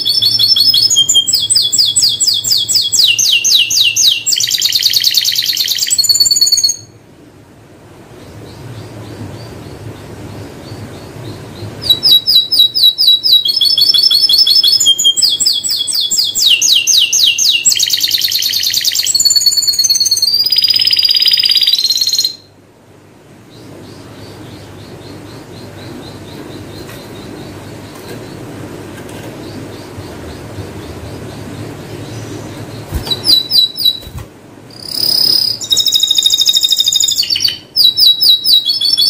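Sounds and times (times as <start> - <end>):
canary singing rapid trills: 0.0 - 7.0, 8.2 - 22.6, 23.4 - 39.0
faint bird chirps: 0.0 - 7.0, 8.2 - 22.5, 29.3 - 39.0.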